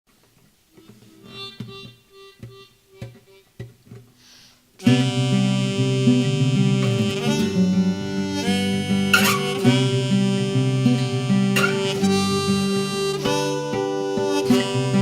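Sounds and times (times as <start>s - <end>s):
band playing held chords: 4.8s - 15.0s
single plucked notes: 4.8s - 15.0s.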